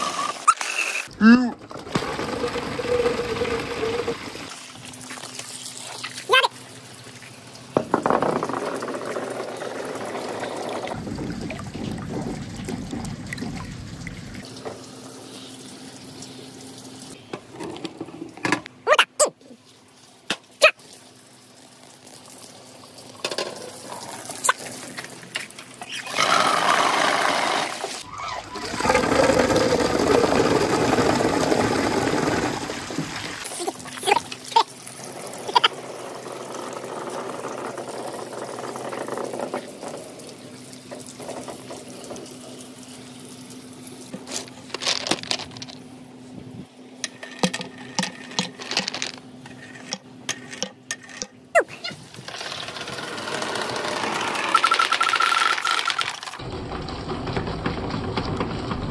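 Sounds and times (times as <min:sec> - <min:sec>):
water running and splashing: 0:01.8 - 0:07.8, 0:19.5 - 0:45.7
balls knocking on bamboo: 0:07.8 - 0:08.8.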